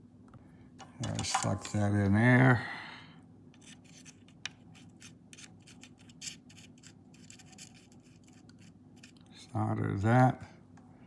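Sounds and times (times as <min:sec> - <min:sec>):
faint scratching of metal parts: 0:03.5 - 0:09.2.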